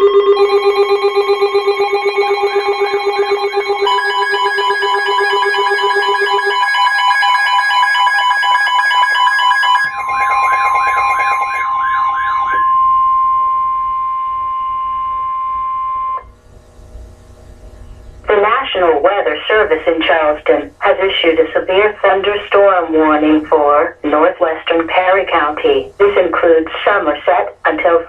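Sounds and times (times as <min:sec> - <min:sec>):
overlapping beeping alarm tones: 0:00.0 - 0:16.2
warbling siren-like alarm: 0:00.0 - 0:16.3
steady warning tone: 0:00.0 - 0:28.0.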